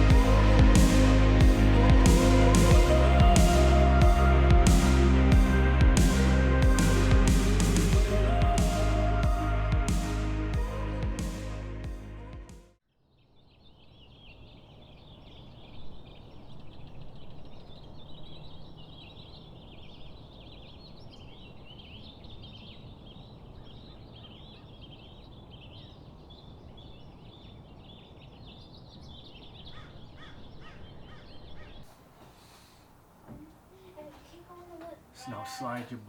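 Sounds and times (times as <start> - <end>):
low background rumble: 0.0 - 12.6
many birds chirping: 13.0 - 32.8.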